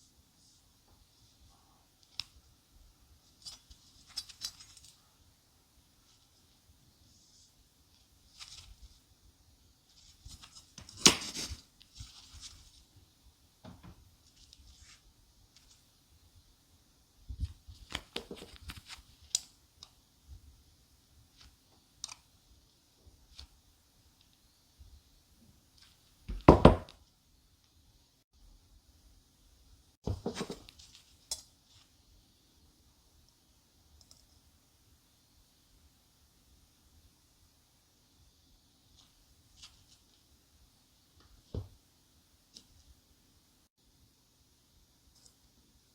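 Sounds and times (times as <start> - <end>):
rustles and clicks of small objects: 3.2 - 5.1, 6.0 - 9.1, 9.8 - 13.0, 13.6 - 16.0, 17.2 - 20.5, 25.6 - 27.8, 30.0 - 32.1, 38.9 - 40.3
dull knock: 26.3 - 26.9.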